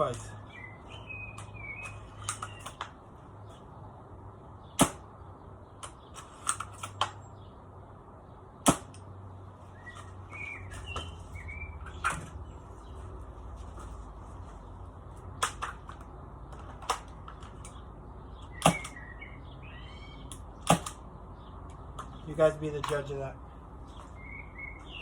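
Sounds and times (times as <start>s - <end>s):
birds chirping: 0.0s - 25.0s
airsoft rifle shots: 4.8s - 5.1s, 8.6s - 9.0s, 18.6s - 19.0s, 20.6s - 21.0s.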